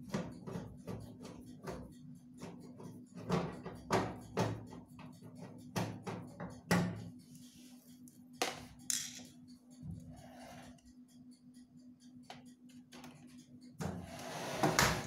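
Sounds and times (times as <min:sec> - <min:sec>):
tools knocking and clicking: 0:00.0 - 0:07.1, 0:08.4 - 0:09.5, 0:12.2 - 0:14.1.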